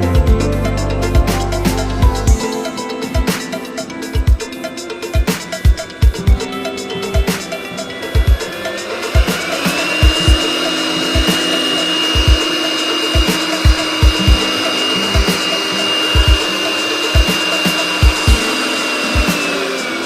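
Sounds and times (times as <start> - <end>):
air blower motor whine: 0.0 - 20.0
music with steady beat: 0.0 - 20.0.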